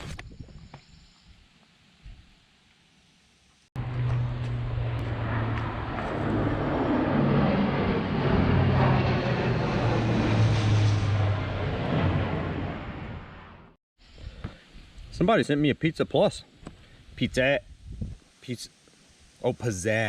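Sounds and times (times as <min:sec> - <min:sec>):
engine running: 0:03.8 - 0:13.8.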